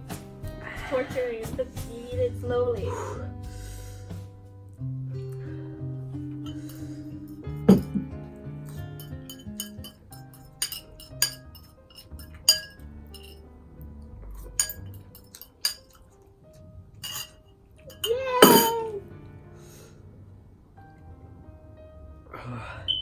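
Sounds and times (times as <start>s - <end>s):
background music: 0.0s - 23.0s
utensil clinking against bowl: 6.5s - 8.1s, 9.0s - 13.4s, 14.4s - 16.1s, 17.0s - 18.9s.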